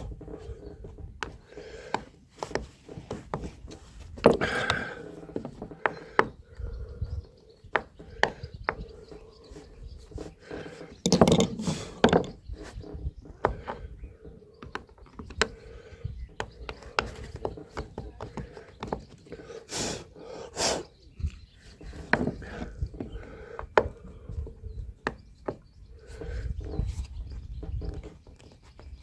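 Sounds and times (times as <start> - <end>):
hand tools scraping on wood: 0.0 - 6.4, 7.8 - 14.8.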